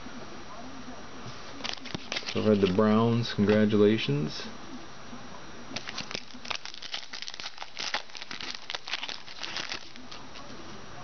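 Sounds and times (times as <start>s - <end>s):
foil wrapper tearing and crinkling: 1.6s - 2.8s, 5.8s - 10.4s.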